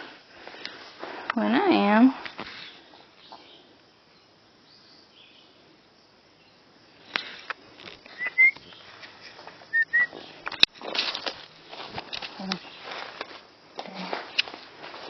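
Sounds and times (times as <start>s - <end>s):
footsteps through brush and twigs: 7.1s - 15.0s
small bird chirping: 8.1s - 9.0s, 9.7s - 10.5s.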